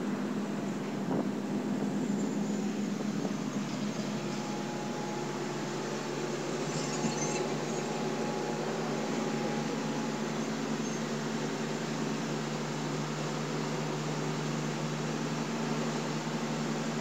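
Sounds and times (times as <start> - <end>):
road noise: 0.0 - 12.3
diesel engine running: 0.0 - 17.0.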